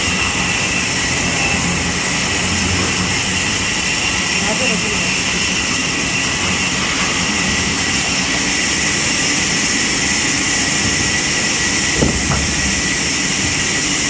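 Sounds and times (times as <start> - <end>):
sawmill machinery hissing and whining: 0.0 - 14.0
short knock: 12.0 - 12.8.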